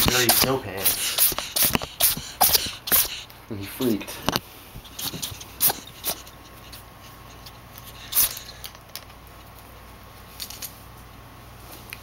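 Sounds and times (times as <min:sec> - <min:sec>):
ferret sneezing: 0:00.0 - 0:03.3, 0:04.9 - 0:06.8, 0:07.9 - 0:08.6.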